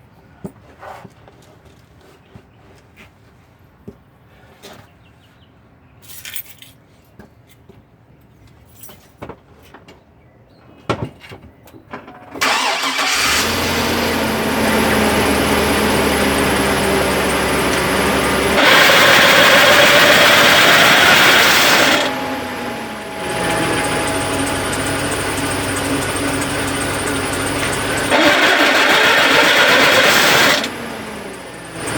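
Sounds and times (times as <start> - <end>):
truck engine starting and idling: 12.4 - 31.9.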